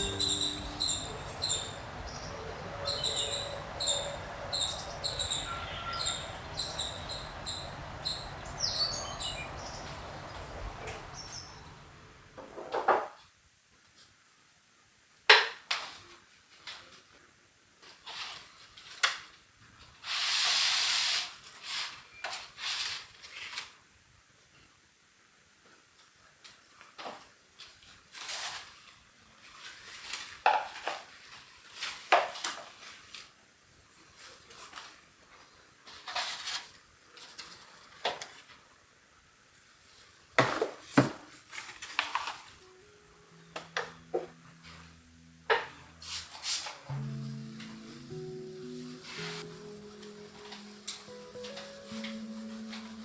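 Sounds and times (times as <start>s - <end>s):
steady hiss: 0.0s - 12.4s, 41.9s - 53.0s
rustles: 0.0s - 12.6s, 26.4s - 38.7s, 39.6s - 53.0s.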